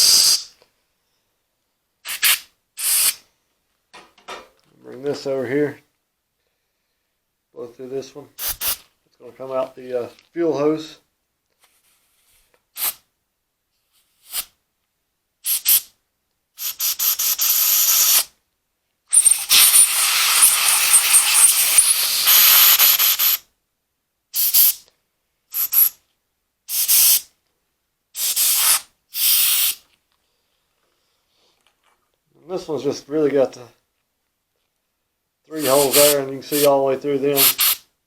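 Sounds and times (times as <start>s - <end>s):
compressed air blowgun hissing: 0.0s - 0.5s, 2.1s - 3.2s, 8.4s - 8.8s, 19.1s - 23.4s, 24.4s - 24.8s, 28.2s - 29.8s, 35.5s - 36.8s, 37.4s - 37.8s.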